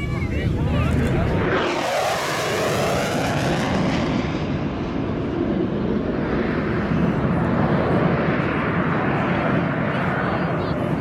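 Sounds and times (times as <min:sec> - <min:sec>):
jet engine roar: 0:00.0 - 0:11.0.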